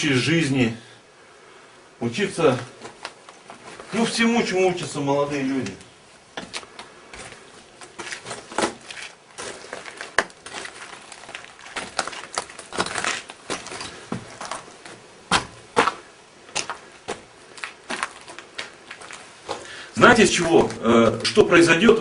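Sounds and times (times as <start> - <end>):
footsteps crunching over debris: 2.5 - 4.2, 6.3 - 22.0.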